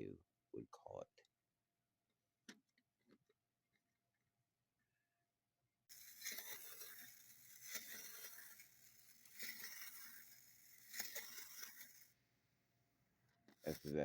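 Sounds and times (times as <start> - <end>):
clockwork toy clatter: 5.9 - 12.2, 13.5 - 14.0
clockwork toy whirring rattle: 5.9 - 12.2, 13.4 - 14.0.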